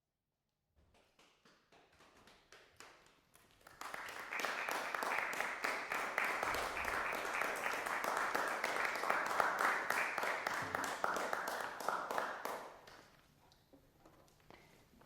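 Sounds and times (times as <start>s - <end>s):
audience applause: 3.4s - 12.8s.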